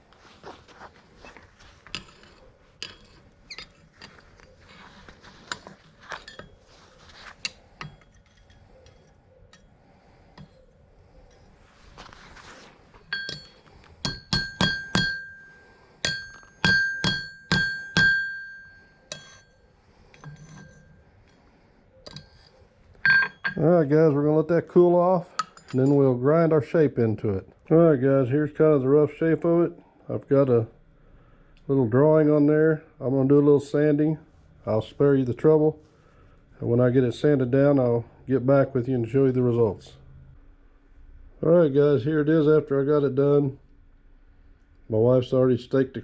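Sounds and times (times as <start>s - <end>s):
metal clinks and taps: 1.8s - 4.6s, 7.4s - 9.8s, 13.0s - 21.4s, 22.0s - 23.6s, 25.4s - 26.0s
hammer ringing on anvil: 13.1s - 19.6s, 23.0s - 23.6s.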